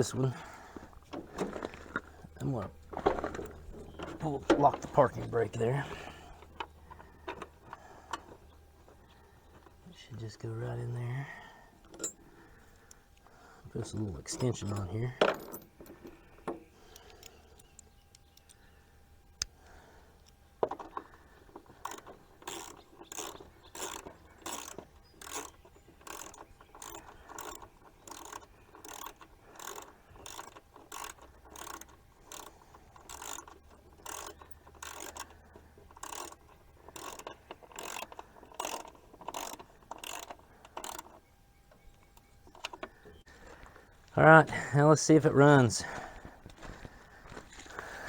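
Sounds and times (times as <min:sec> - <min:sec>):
ratchet wrench clicking: 0:21.8 - 0:41.2.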